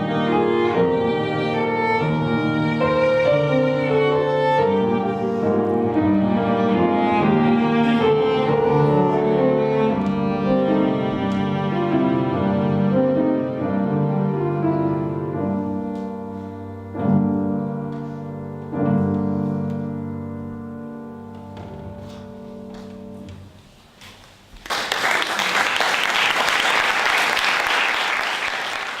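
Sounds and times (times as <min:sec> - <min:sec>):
bowed string notes: 0:00.0 - 0:20.6
piano: 0:00.0 - 0:29.0
audience applause: 0:24.6 - 0:29.0.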